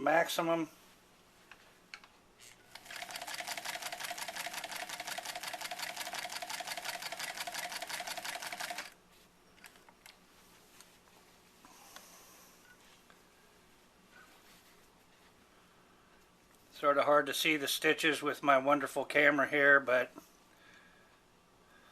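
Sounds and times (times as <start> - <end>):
sewing machine clicking: 2.7 - 9.0.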